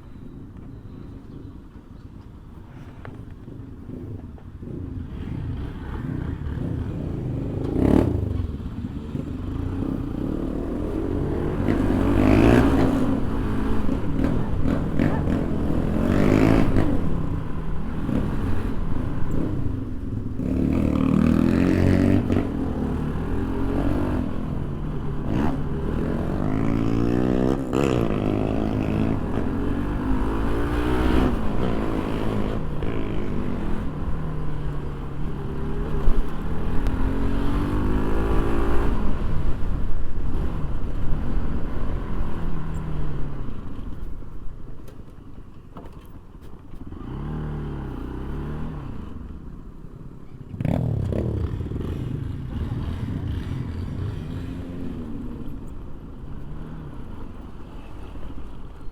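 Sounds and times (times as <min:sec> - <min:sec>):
motorcycle engine revving: 0:03.9 - 0:43.5, 0:46.8 - 0:58.3.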